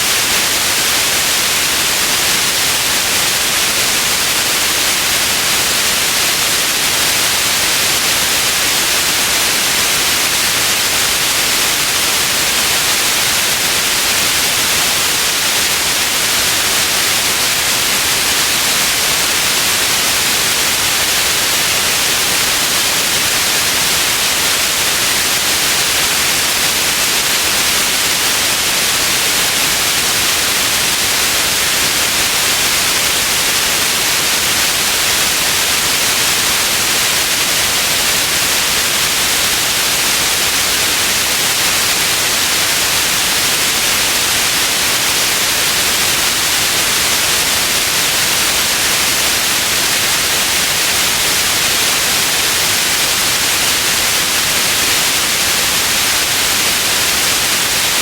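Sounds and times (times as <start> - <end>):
steady white noise hiss: 0.0 - 58.0.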